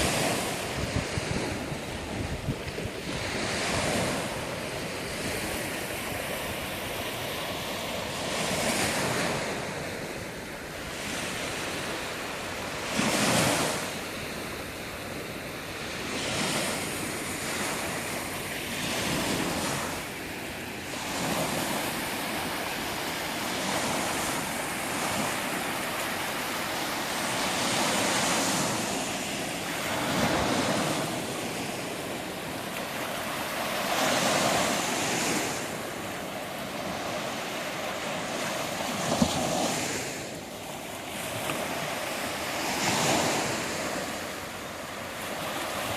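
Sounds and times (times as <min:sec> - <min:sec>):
wind buffeting microphone: 0:00.0 - 0:06.7
sea waves breaking on beach: 0:00.0 - 0:45.9.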